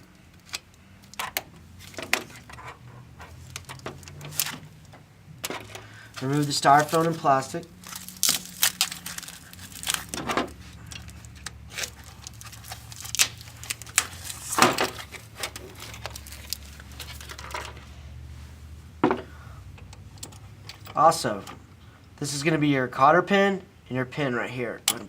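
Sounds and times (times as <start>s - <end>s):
styrofoam crackling: 6.0s - 17.5s
plastic wrapping crinkling: 6.0s - 17.8s.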